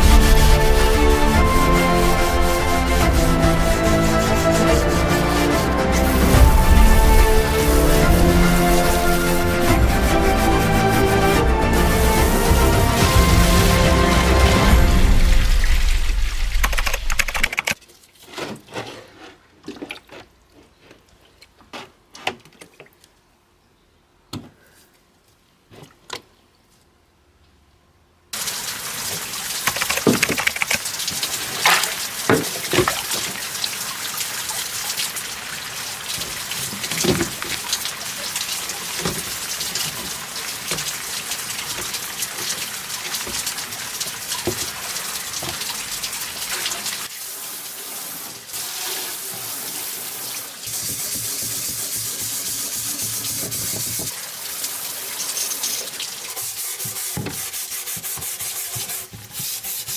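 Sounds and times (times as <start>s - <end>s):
scrubbing metal box: 0.0s - 11.2s, 29.7s - 30.8s
water running from tap: 0.0s - 17.8s, 28.4s - 59.9s.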